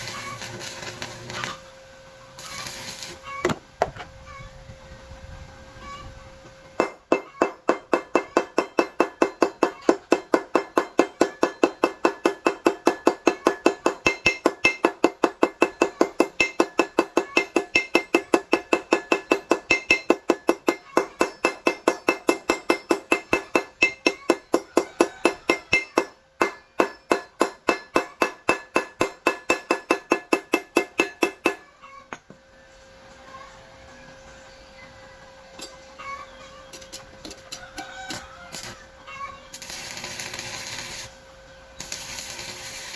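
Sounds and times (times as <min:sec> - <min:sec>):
hammer striking steel: 0:06.8 - 0:31.7.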